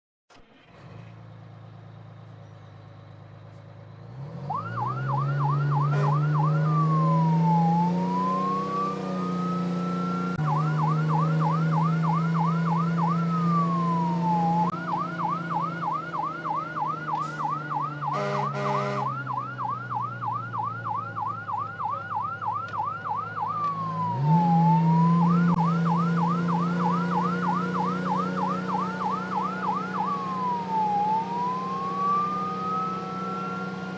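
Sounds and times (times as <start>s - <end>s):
fire engine siren wailing: 4.2s - 33.9s
short horn blasts: 5.9s - 6.3s, 18.1s - 19.2s.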